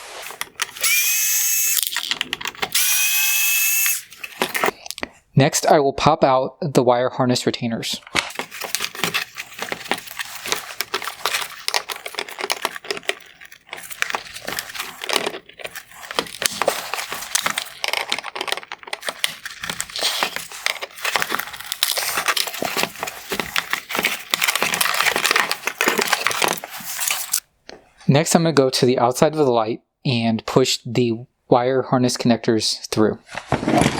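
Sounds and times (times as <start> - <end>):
plastic clicks and crackles: 0.2 - 5.2, 8.1 - 27.5.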